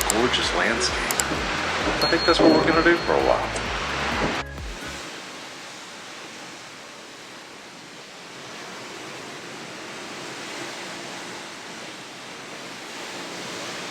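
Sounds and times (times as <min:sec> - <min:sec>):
wind rushing: 0:00.0 - 0:06.0
sea water rushing: 0:00.0 - 0:13.9.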